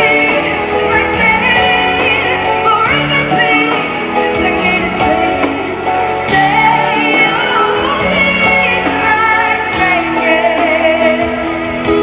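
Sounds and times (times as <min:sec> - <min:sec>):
woman singing pop ballad: 0:00.0 - 0:12.0.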